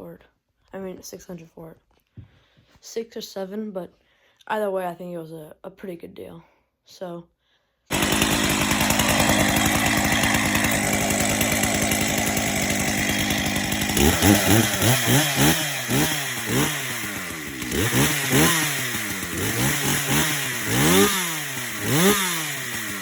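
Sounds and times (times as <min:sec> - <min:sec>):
chainsaw revving: 0:07.9 - 0:23.0.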